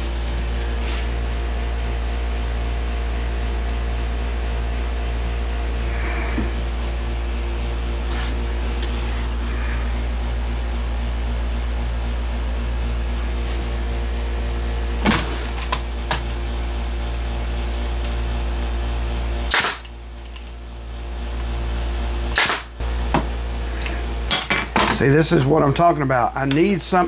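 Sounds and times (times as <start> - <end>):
machine hum: 0.0 - 27.0
nail gun firing into wood: 19.5 - 19.9, 22.3 - 22.8.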